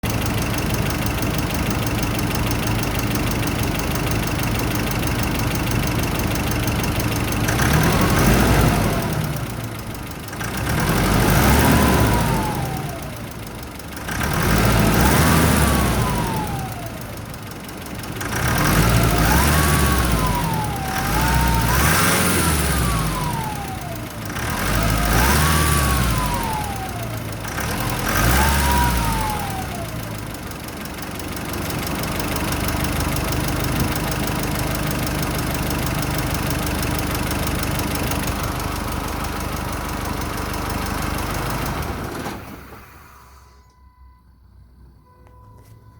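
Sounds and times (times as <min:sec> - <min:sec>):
car engine idling and revving: 0:00.0 - 0:45.9
turbocharger whine: 0:18.2 - 0:30.2.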